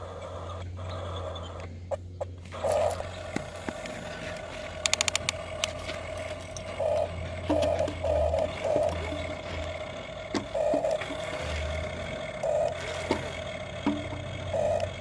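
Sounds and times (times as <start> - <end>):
toy electric motors whining: 0.0 - 15.0
plastic clicks: 3.4 - 6.7.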